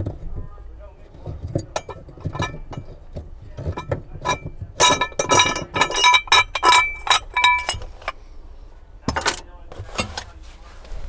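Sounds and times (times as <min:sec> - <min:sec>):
metal parts clinking and clanking: 0:01.2 - 0:08.2, 0:09.0 - 0:10.3.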